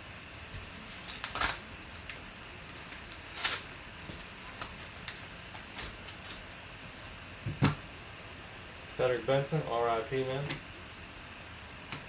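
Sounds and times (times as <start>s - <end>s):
card pack rustling: 0.3s - 6.5s.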